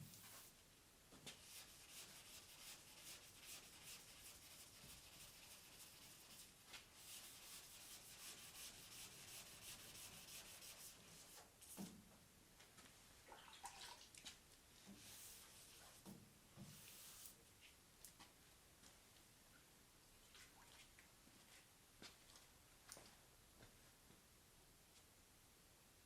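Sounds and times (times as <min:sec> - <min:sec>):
sanding block rubbing: 0:01.6 - 0:11.0.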